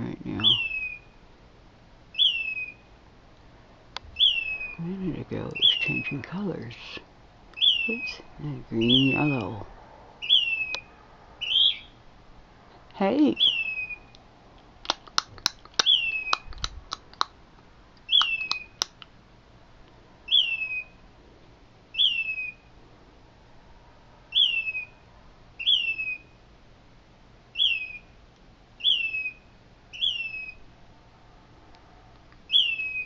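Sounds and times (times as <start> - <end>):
sharp clicking bird notes: 14.8 - 17.4, 18.0 - 19.1.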